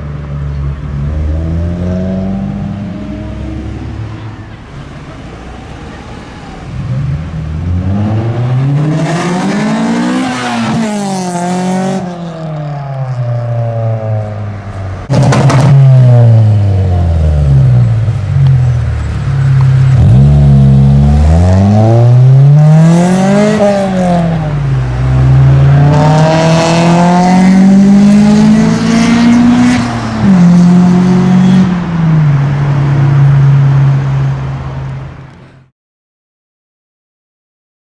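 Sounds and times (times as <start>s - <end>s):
car engine revving: 0.8s - 12.2s, 15.0s - 35.3s
engine backfire bang: 15.1s - 16.2s.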